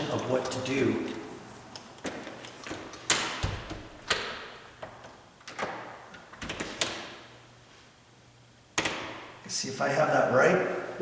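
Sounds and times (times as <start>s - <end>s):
deadbolt clicks and knocks: 2.7s - 7.2s, 8.8s - 9.2s.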